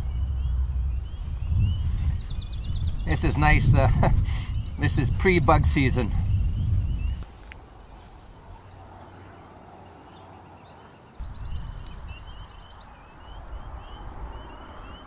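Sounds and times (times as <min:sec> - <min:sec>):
low rumble on microphone: 0:00.0 - 0:08.9, 0:11.2 - 0:15.0
distant songbirds chirping: 0:00.0 - 0:15.0.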